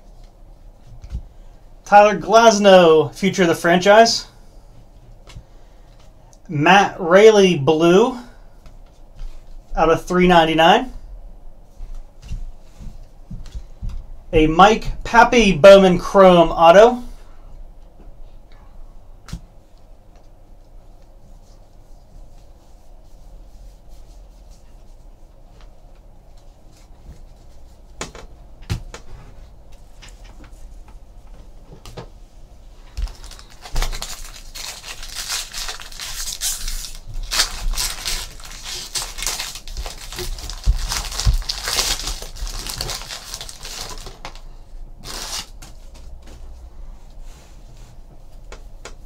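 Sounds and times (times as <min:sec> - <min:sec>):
wrappers crinkling and tearing: 0:32.9 - 0:45.6.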